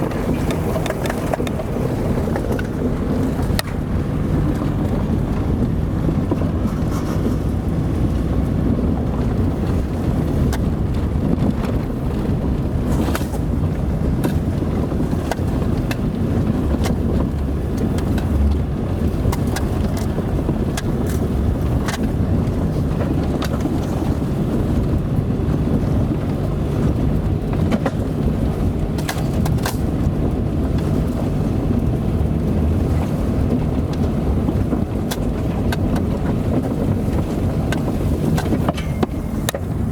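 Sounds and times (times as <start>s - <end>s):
sharp clicks and knocks: 0.0s - 24.2s, 33.0s - 39.9s
car engine and tyres rumbling: 0.0s - 39.9s.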